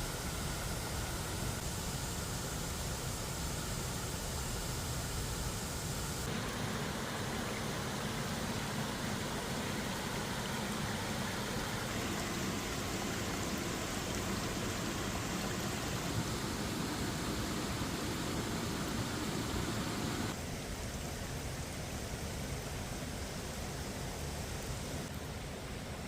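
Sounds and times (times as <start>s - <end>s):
creek water rushing over rocks: 6.2s - 24.4s.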